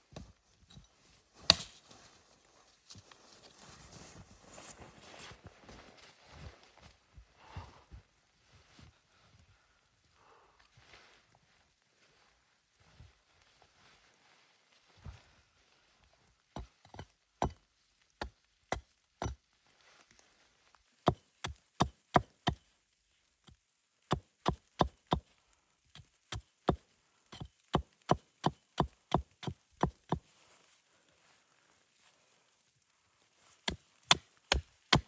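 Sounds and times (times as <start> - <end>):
wood being chopped: 1.5 - 1.8, 18.7 - 19.4, 24.1 - 25.3, 27.4 - 30.2, 33.7 - 35.0.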